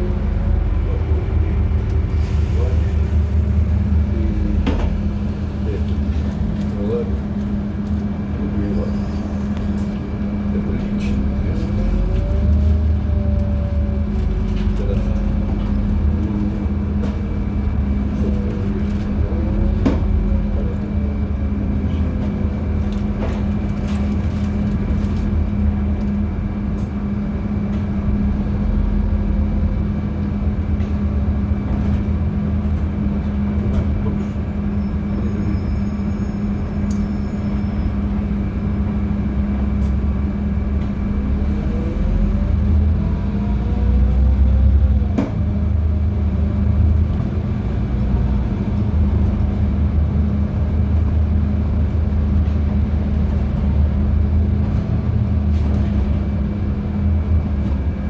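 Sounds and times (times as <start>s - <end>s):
bus body rattling and clicking: 0.0s - 58.0s
bus engine drone: 0.0s - 58.0s.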